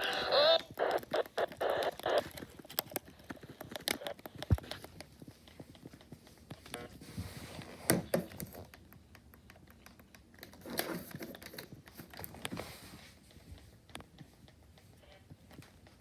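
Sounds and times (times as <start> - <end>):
small clicks and taps: 0.6 - 6.8, 8.1 - 12.6.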